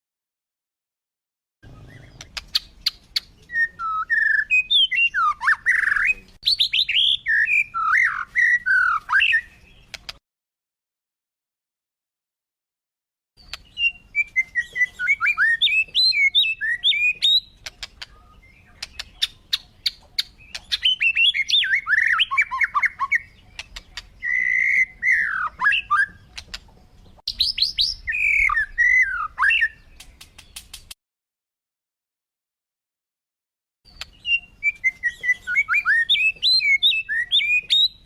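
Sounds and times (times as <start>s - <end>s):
birds chirping: 1.6s - 10.2s, 13.4s - 31.0s, 33.9s - 38.0s
sharp clicks: 2.2s - 3.2s, 9.9s - 10.2s, 17.6s - 18.2s, 18.8s - 19.3s, 23.6s - 24.1s, 30.0s - 31.0s.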